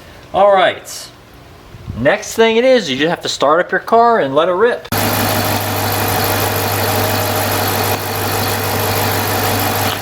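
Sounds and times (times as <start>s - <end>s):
air compressor humming: 4.9s - 10.0s.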